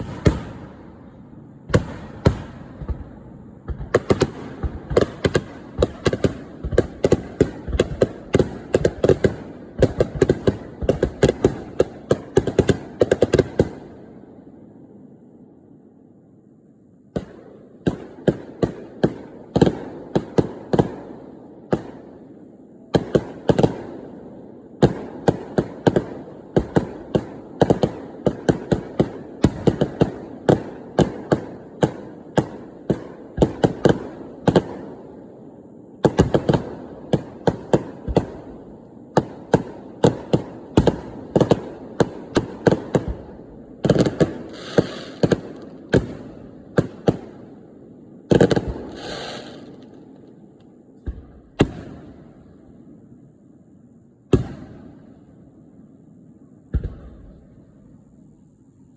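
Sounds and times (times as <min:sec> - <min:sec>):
fireworks bursting: 0:00.0 - 0:14.3, 0:17.1 - 0:53.2, 0:54.3 - 0:55.8, 0:56.5 - 0:58.2.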